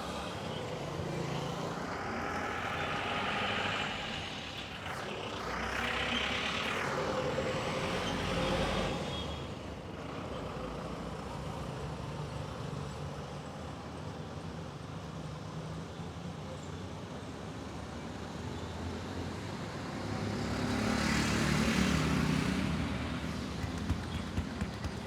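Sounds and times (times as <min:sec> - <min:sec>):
vehicle passing by: 0:00.0 - 0:09.4, 0:20.0 - 0:25.0
traffic hum: 0:00.0 - 0:13.6, 0:19.1 - 0:25.0.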